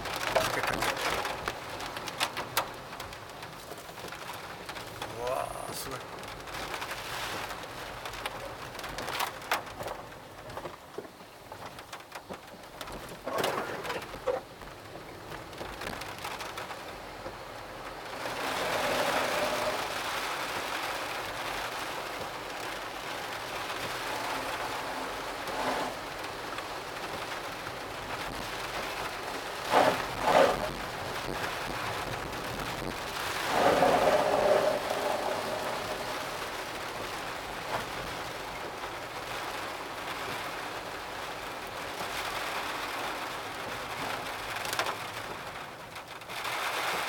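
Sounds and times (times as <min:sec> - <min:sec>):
heavy rain pouring: 0:00.0 - 0:47.0.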